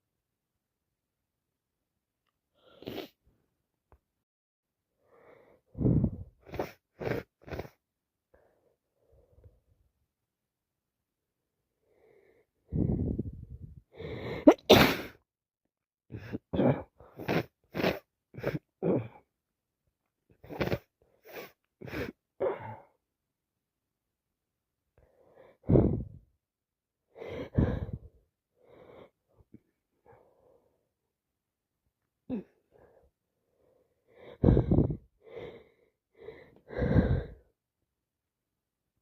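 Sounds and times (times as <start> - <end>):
woman sneezing: 14.4 - 15.2.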